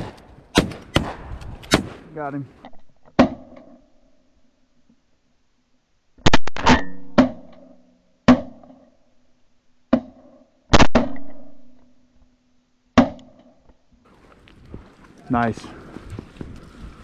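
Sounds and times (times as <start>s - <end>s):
shotgun shots echoing: 0.0s - 2.4s.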